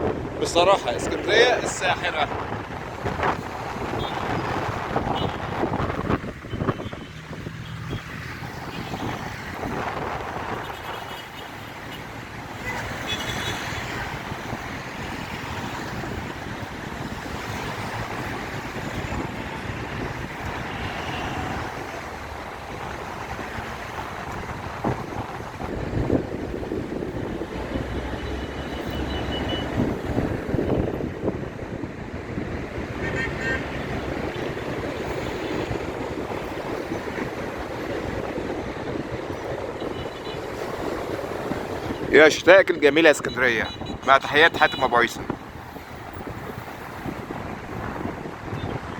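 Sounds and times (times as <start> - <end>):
sea waves: 0.0 - 6.6, 7.7 - 31.3, 31.9 - 48.8
wind buffeting microphone: 0.0 - 13.0, 13.6 - 42.8, 45.1 - 48.9
road traffic: 0.0 - 48.9.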